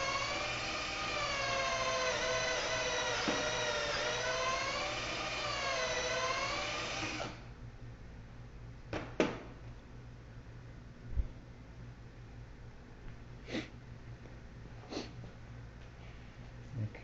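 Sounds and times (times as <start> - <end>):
cordless drill whining: 0.0 - 7.4.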